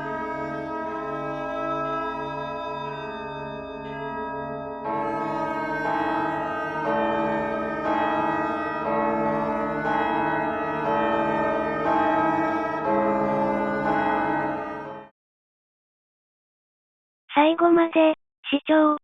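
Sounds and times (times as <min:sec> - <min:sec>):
organ-like keyboard chords: 0:04.8 - 0:15.1.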